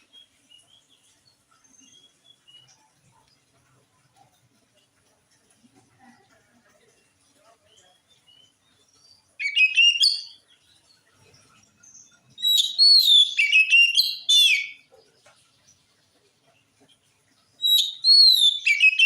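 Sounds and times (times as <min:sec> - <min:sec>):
songbird whistling and chattering: 0:09.4 - 0:10.4, 0:12.4 - 0:14.8, 0:17.6 - 0:19.0.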